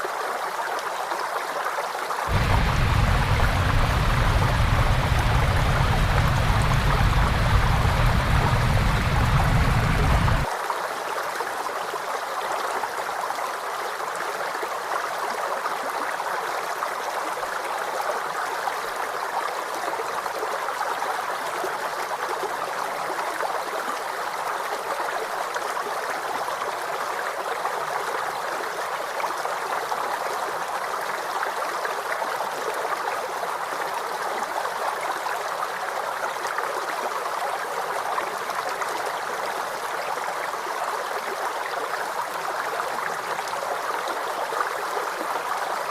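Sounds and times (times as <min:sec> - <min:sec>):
waterfall rushing: 0:02.3 - 0:10.5.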